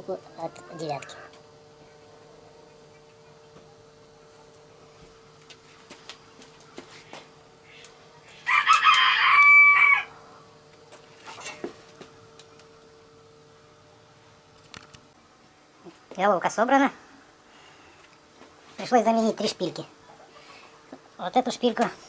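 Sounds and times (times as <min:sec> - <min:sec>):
faint hum: 0:00.0 - 0:22.0
rooster crowing: 0:08.4 - 0:10.4.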